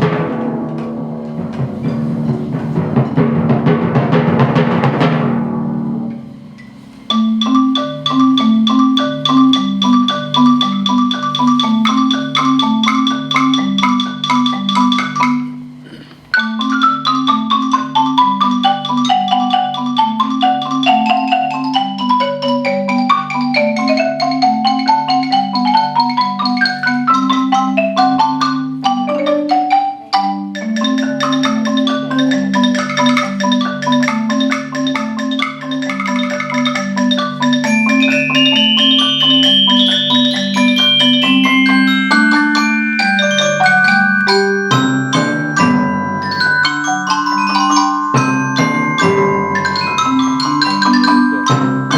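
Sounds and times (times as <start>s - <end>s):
drum hit ringing: 0.0s - 16.1s, 37.6s - 51.9s
marimba low pattern: 0.0s - 51.9s
bell-like mallet melody: 7.1s - 15.8s, 16.4s - 51.9s.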